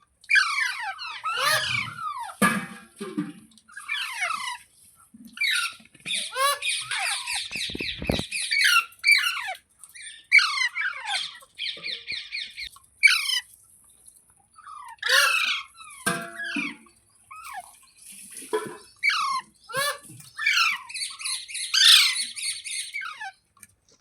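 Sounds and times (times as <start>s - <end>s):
parakeet chirps and trills: 0.3s - 2.4s, 5.4s - 13.4s, 14.6s - 18.1s, 18.8s - 23.5s
parakeet squawks: 0.3s - 2.4s, 5.4s - 9.6s, 10.3s - 13.4s, 14.7s - 17.6s, 19.0s - 23.3s.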